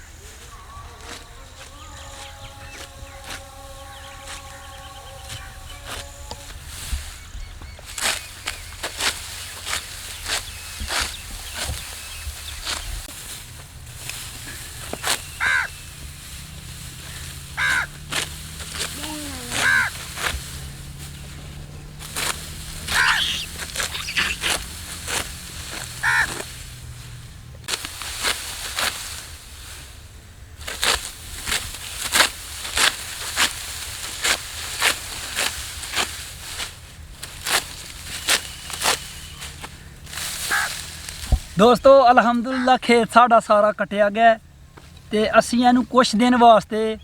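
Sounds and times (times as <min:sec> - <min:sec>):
rice stalks cut by hand: 0:00.9 - 0:41.6
crows cawing: 0:02.2 - 0:05.8, 0:14.5 - 0:16.1, 0:16.8 - 0:20.6, 0:22.1 - 0:27.0, 0:38.3 - 0:41.1, 0:42.5 - 0:42.8.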